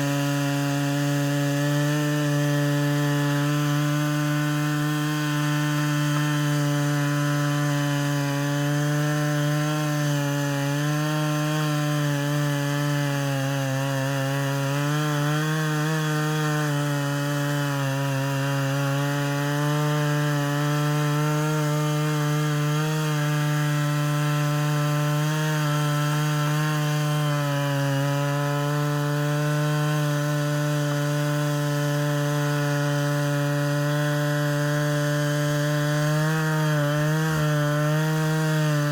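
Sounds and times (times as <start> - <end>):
chainsaw cutting wood at high revs: 0.0 - 38.9.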